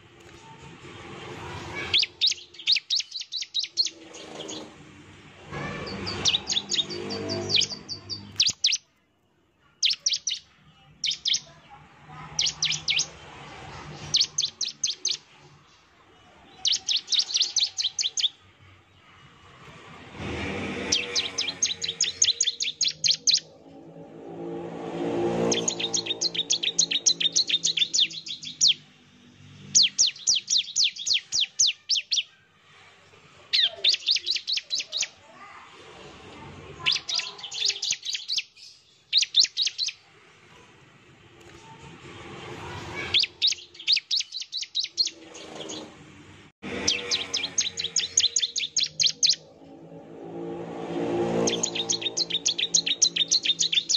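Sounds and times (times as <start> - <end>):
bird singing rapid high notes: 1.8 - 4.7, 5.6 - 8.9, 9.6 - 11.6, 12.3 - 18.5, 20.8 - 32.5, 33.5 - 35.2, 36.8 - 40.0, 43.0 - 45.9, 46.6 - 50.0, 51.0 - 53.9.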